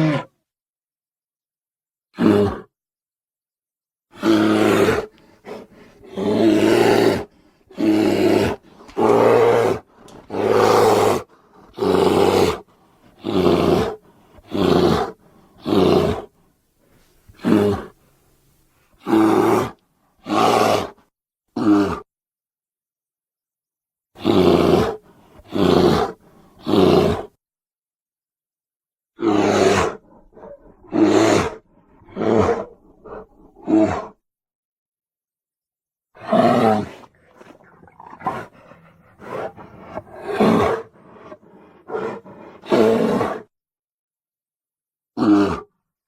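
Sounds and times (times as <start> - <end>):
bear roars and growls: 0.0 - 0.4, 2.1 - 2.7, 4.1 - 16.4, 17.3 - 18.0, 19.0 - 21.0, 21.6 - 22.1, 24.2 - 27.4, 29.2 - 34.2, 36.1 - 43.5, 45.2 - 45.8.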